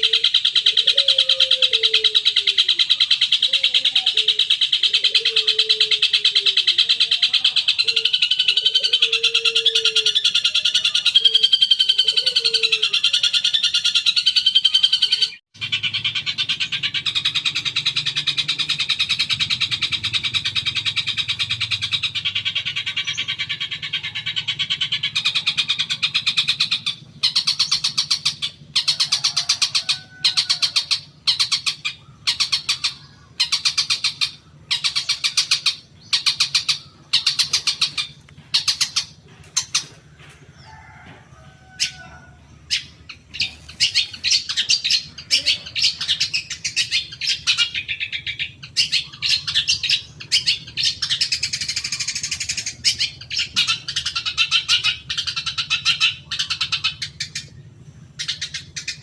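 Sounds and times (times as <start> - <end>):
bird harsh rapid chattering: 0.0 - 40.2, 42.6 - 59.0.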